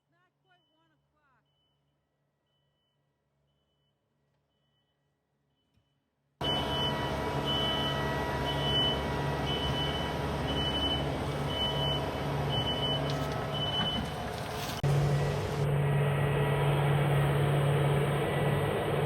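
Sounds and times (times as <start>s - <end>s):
back-up alarm beeping: 6.4s - 14.2s
vehicle engine running: 6.4s - 19.0s.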